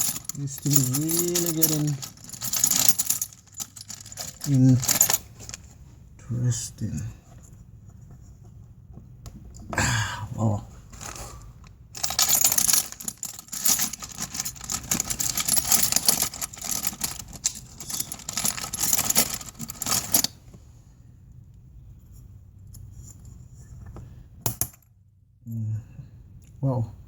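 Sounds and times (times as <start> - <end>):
metal clattering and scraping: 0.0 - 5.8, 10.9 - 11.4, 12.0 - 20.3.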